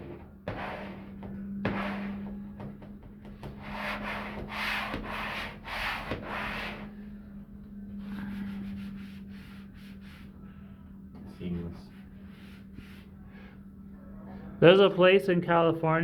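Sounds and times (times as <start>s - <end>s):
rubbing strokes on wallpaper: 0.0s - 2.6s, 3.3s - 7.0s, 8.0s - 10.4s, 11.6s - 13.5s
steady low hum: 0.0s - 16.0s.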